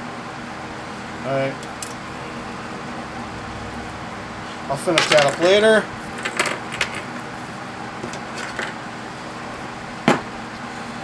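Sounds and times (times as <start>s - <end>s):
low hum: 2.1s - 6.2s.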